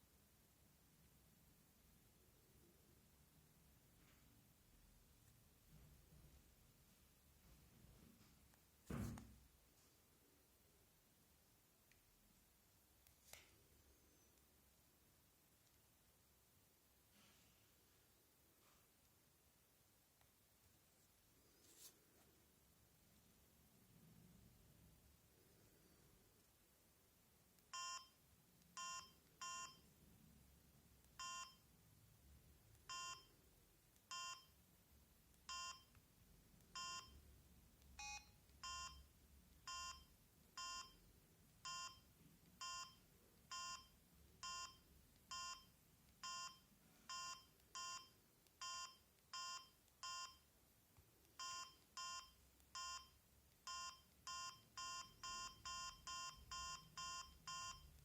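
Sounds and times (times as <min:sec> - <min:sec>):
phone keypad beeps: 0:27.7 - 0:28.2, 0:28.8 - 0:29.8, 0:31.2 - 0:31.6, 0:32.9 - 0:33.3, 0:34.1 - 0:34.6, 0:35.5 - 0:35.9, 0:36.8 - 0:37.2, 0:38.0 - 0:41.0, 0:41.6 - 0:50.4, 0:51.4 - 0:58.0.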